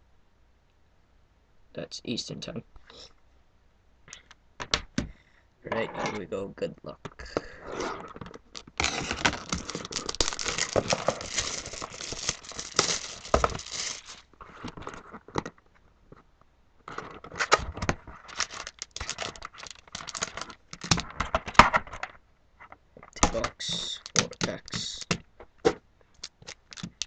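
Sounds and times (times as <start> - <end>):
plastic wrapping crinkling and tearing: 8.1 - 15.1, 17.0 - 22.0, 23.7 - 25.2, 26.1 - 27.0.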